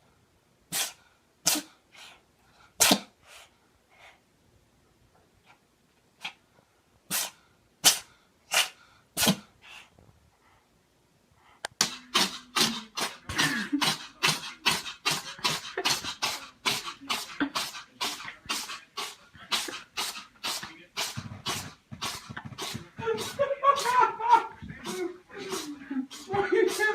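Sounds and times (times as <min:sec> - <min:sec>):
cat sneezing: 0:00.7 - 0:02.2, 0:02.8 - 0:03.4, 0:07.1 - 0:09.5, 0:11.8 - 0:24.0, 0:24.8 - 0:26.9
short sharp breathy bursts: 0:00.7 - 0:04.2, 0:07.1 - 0:10.7, 0:24.7 - 0:26.9.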